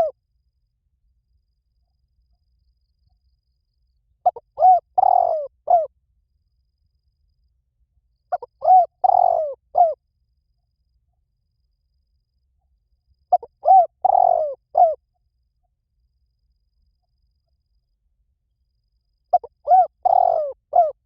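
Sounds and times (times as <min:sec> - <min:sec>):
dove cooing: 0:04.2 - 0:05.9, 0:08.3 - 0:10.0, 0:13.3 - 0:15.0, 0:19.3 - 0:21.0.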